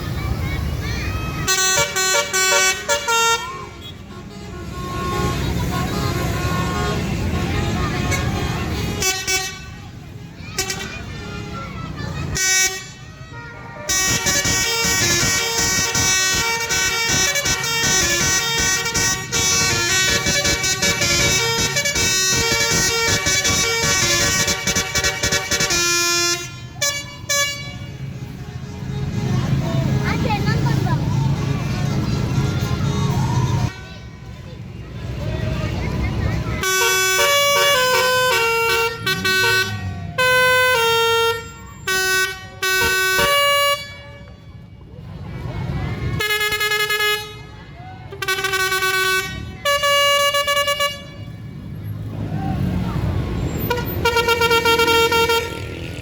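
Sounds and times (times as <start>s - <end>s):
multi-tone air horn melody: 1.4s - 30.0s, 36.6s - 44.4s, 46.2s - 51.5s, 53.6s - 56.0s.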